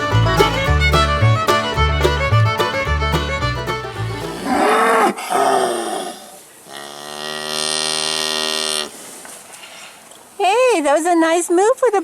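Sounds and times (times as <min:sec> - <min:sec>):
cow mooing: 0:04.2 - 0:09.0.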